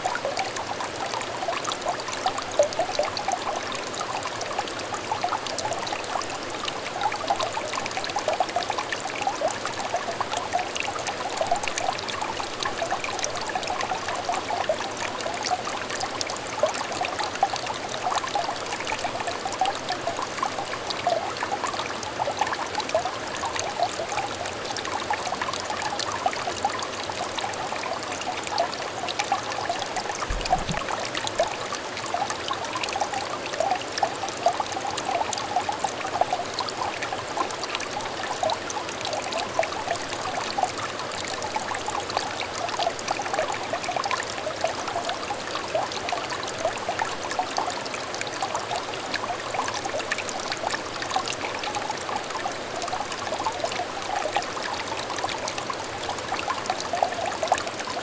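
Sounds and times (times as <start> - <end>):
stream trickling over stones: 0.0 - 58.0
low thump: 30.3 - 30.9.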